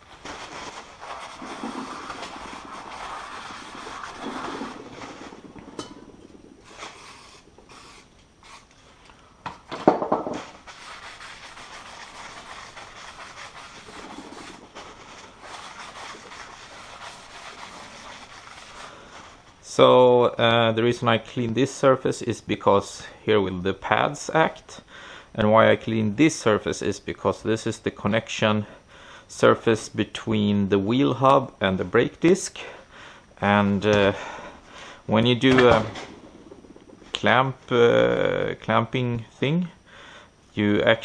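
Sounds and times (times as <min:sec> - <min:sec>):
hand rubbing and scrubbing metal: 0:00.0 - 0:09.1, 0:10.4 - 0:19.6.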